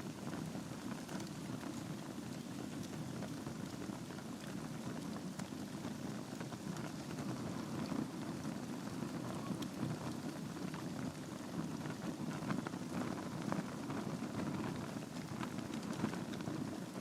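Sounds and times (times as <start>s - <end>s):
fire crackles and pops: 0.0s - 17.0s
low rumble of flames: 0.0s - 17.0s.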